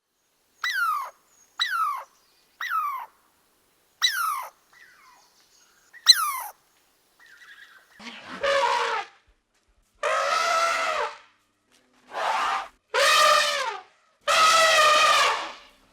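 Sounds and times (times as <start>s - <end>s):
small animal crying: 0.6s - 3.1s, 4.0s - 4.5s, 6.1s - 6.5s.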